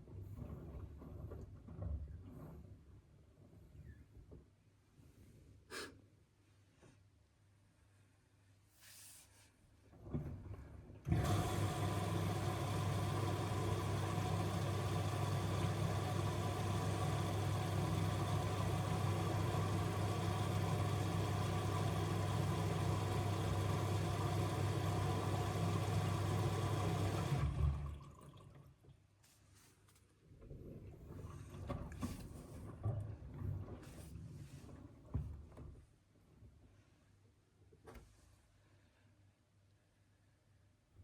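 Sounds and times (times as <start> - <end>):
washing machine filling with water: 10.8 - 29.1.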